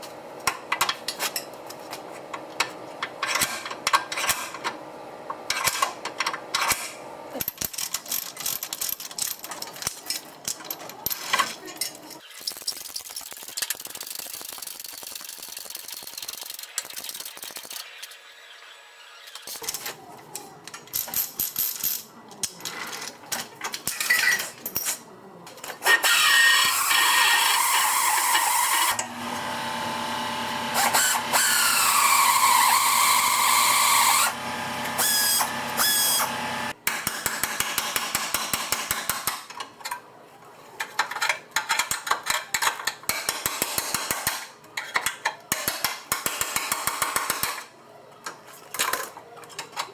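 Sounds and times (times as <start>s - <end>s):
power tool whining: 25.9s - 36.7s.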